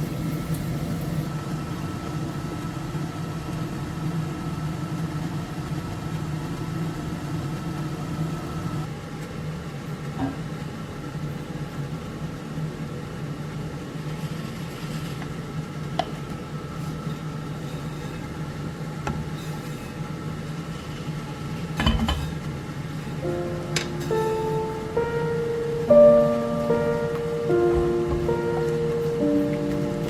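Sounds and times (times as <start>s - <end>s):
kitchenware clinking: 21.8s - 22.4s
dishes clattering: 21.8s - 22.5s.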